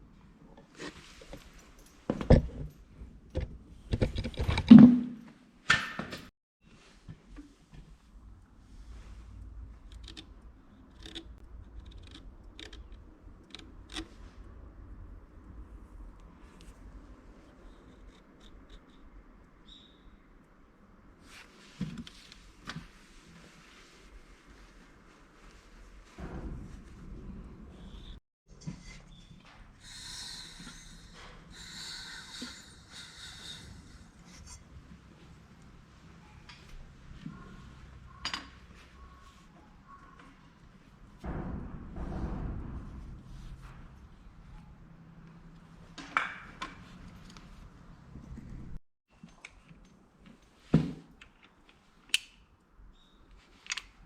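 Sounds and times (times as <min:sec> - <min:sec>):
low rumble: 0:41.0 - 0:46.0.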